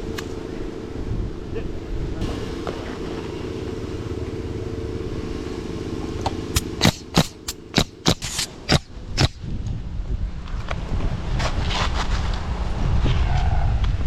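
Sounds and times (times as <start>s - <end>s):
wind rumble on microphone: 0.0s - 3.0s, 8.3s - 14.0s
hammer knocking nails into shingles: 6.6s - 9.4s.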